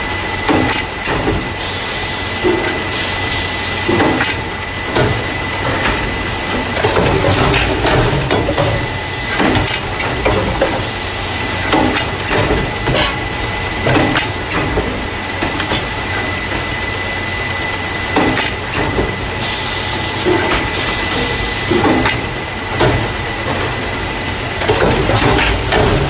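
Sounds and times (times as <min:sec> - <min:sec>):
machine clunks and knocks: 0:03.9 - 0:11.0, 0:11.6 - 0:16.7, 0:20.2 - 0:23.8, 0:24.6 - 0:26.0.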